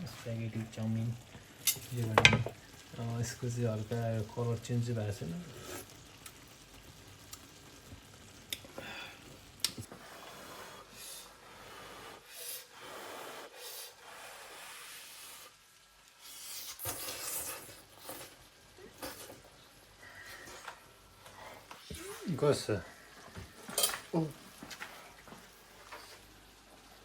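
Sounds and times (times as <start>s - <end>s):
utensil scraping a pot: 5.4s - 6.0s, 16.5s - 19.4s.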